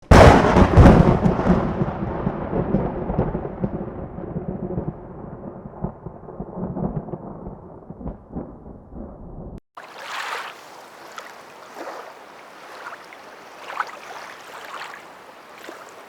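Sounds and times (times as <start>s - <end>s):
thunderclap crack and rumble: 0.0s - 9.6s.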